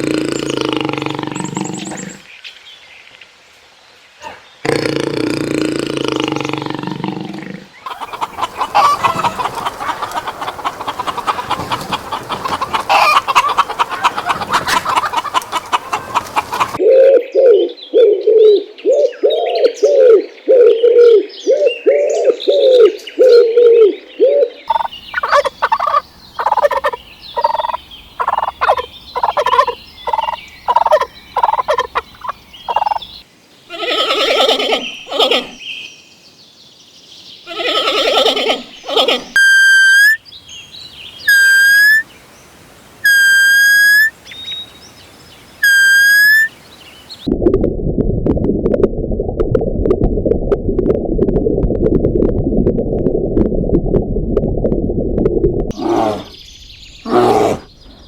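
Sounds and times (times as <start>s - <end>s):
fowl calling: 7.8s - 16.8s, 24.7s - 35.6s, 37.5s - 40.2s, 41.2s - 42.1s, 43.0s - 44.2s, 45.6s - 46.5s
fowl flock chattering: 7.9s - 16.8s, 24.7s - 33.2s, 41.3s - 42.0s, 45.6s - 46.5s.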